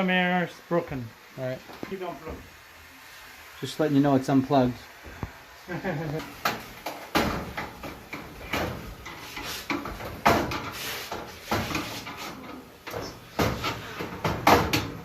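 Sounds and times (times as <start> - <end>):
dryer parts clattering: 6.1 - 15.0.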